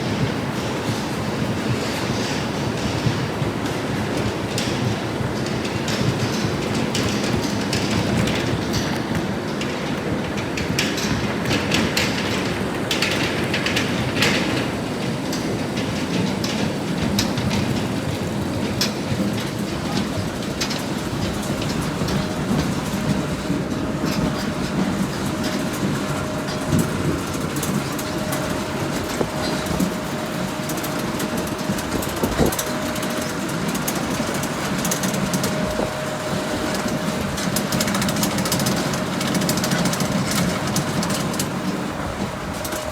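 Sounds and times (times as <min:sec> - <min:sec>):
harvesting machinery rattling: 0:18.7 - 0:42.9.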